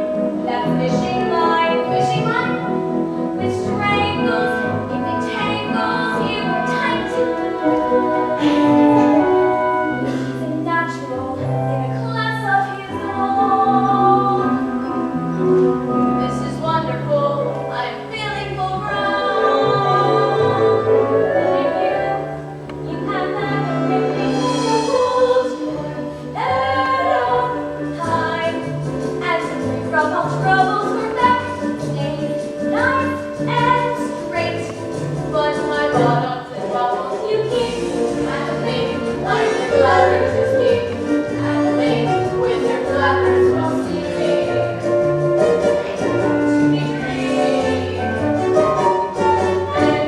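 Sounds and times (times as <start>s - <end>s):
instrumental accompaniment: 0.0s - 50.0s
young voices singing: 10.0s - 15.2s, 16.2s - 50.0s.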